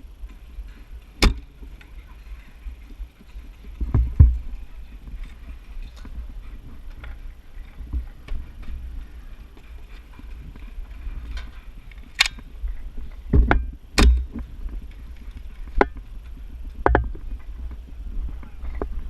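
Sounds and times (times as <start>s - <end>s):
low rumble and handling noise: 0.0s - 19.0s.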